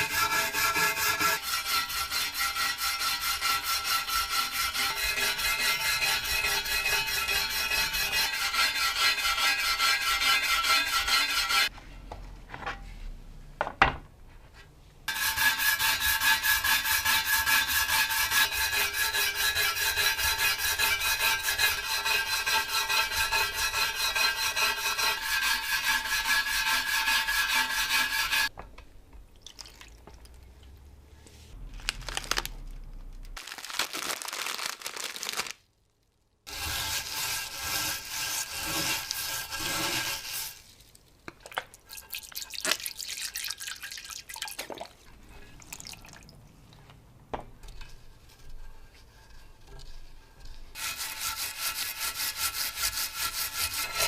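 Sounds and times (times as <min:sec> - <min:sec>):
rust scraped off metal plate: 0:00.0 - 0:11.7, 0:15.1 - 0:28.5, 0:36.5 - 0:40.7, 0:47.8 - 0:54.0.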